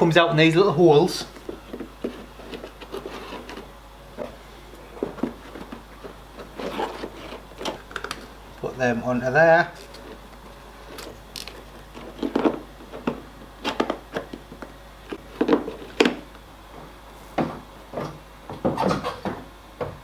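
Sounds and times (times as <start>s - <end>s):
plastic parts rubbing and scraping: 1.4s - 8.3s, 9.7s - 16.2s.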